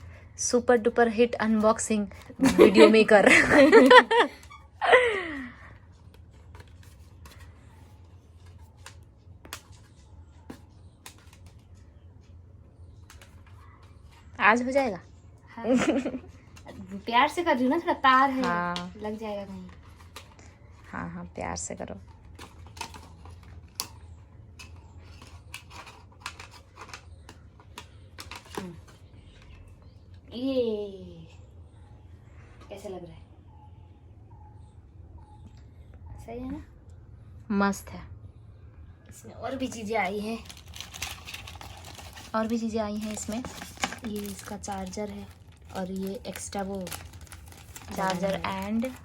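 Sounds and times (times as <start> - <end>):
small clicks and crinkles: 5.6 - 14.4, 16.1 - 30.3, 39.6 - 49.0.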